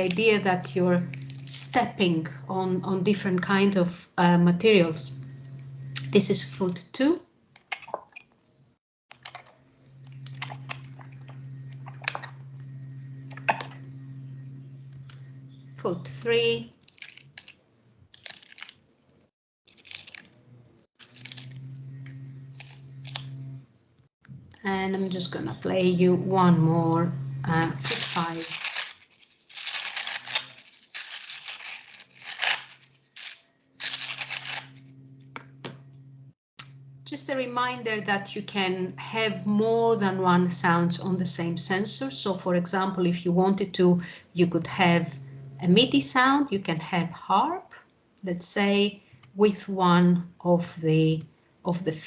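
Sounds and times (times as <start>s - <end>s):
steady low hum: 0.0s - 7.2s, 8.7s - 17.5s, 20.1s - 47.7s
crisp clicks and crackles: 16.8s - 20.4s, 21.0s - 21.6s, 22.6s - 23.4s, 27.8s - 34.8s.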